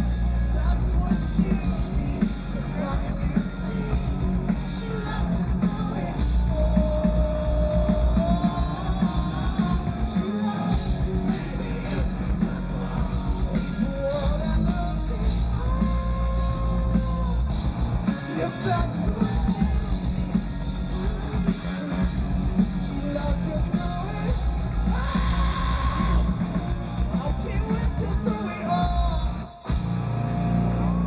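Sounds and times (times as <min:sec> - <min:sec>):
hard rock band playing loudly: 0:00.0 - 0:31.0
person singing or shouting: 0:23.0 - 0:26.4.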